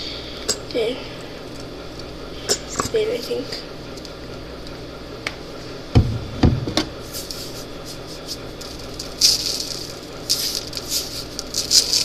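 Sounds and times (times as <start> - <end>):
dull thumps: 5.9 - 6.9
hissy rustle: 7.1 - 12.0.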